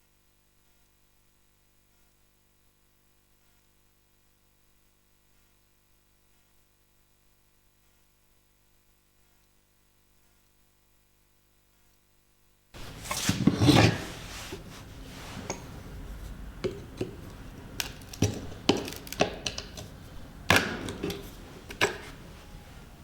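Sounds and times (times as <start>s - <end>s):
loud metal scrape: 12.8s - 23.0s
metal vise and tools knocking: 12.8s - 23.0s.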